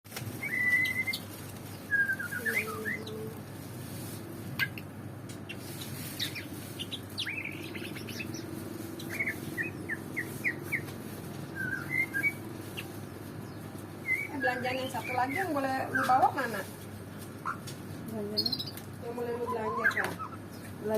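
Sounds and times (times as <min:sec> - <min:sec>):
bird singing whistled notes: 0:00.4 - 0:01.2, 0:01.9 - 0:03.3, 0:09.0 - 0:10.9, 0:11.5 - 0:12.4, 0:13.5 - 0:16.2.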